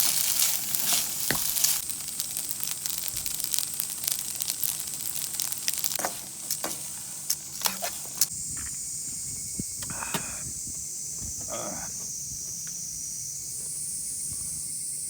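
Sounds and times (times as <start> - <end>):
sharp pops: 0.0 - 8.8, 9.6 - 12.8
crackling and sizzling: 0.0 - 15.0
steady hiss: 0.0 - 15.0.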